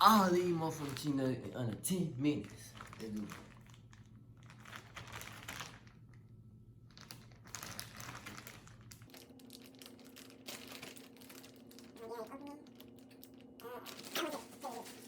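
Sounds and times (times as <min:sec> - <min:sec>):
low steady hum: 0:00.0 - 0:15.0
plastic bag crinkling: 0:00.0 - 0:15.0.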